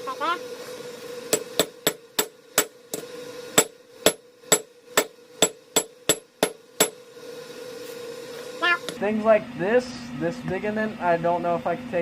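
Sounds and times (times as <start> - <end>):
steady hum: 0.0 - 12.0.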